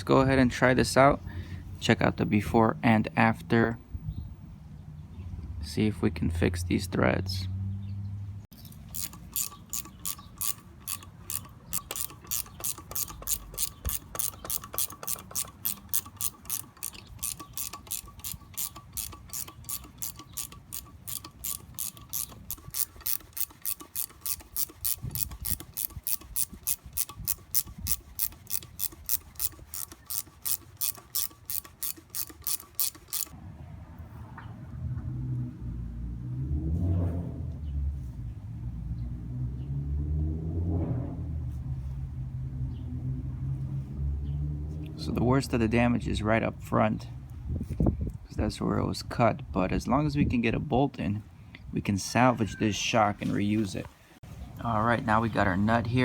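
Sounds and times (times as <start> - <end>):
ratchet handle clicking: 8.6 - 33.4.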